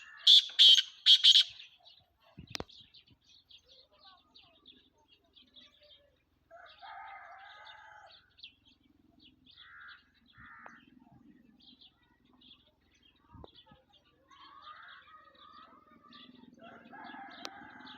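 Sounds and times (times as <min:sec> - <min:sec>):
francolin harsh call: 0:00.0 - 0:01.6
small birds chirping: 0:00.0 - 0:17.9.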